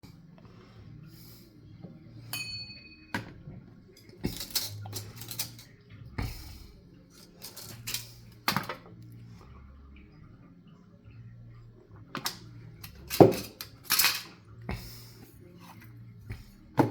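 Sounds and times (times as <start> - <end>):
metal piece ringing: 2.3 - 3.3
small metal parts clinking: 4.0 - 5.8, 7.2 - 8.3, 12.8 - 14.4.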